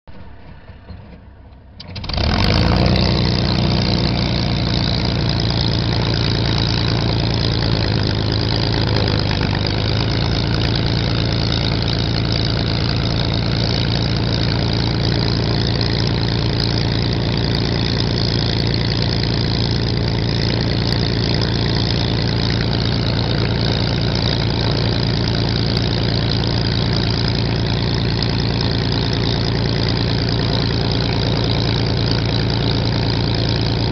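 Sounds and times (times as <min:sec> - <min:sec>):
aircraft engine starting and running: 0:00.1 - 0:33.9.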